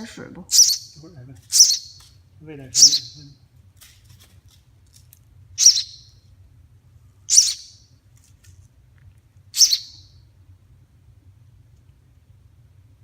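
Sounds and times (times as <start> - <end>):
baby bird chirping: 0.0 - 3.4, 5.6 - 6.2, 7.3 - 7.9, 9.6 - 10.2.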